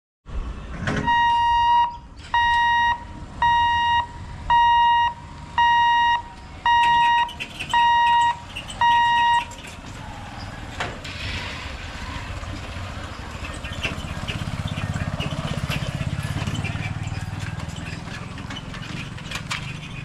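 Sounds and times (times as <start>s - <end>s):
level crossing hooter beeping: 1.0s - 10.8s.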